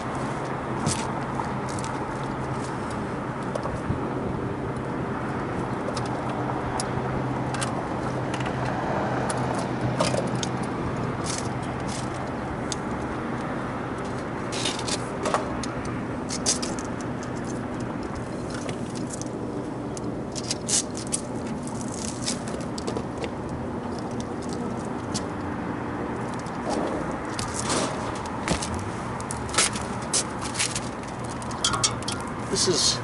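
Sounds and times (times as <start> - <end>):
metallic clinks and rattles: 30.5 - 32.3.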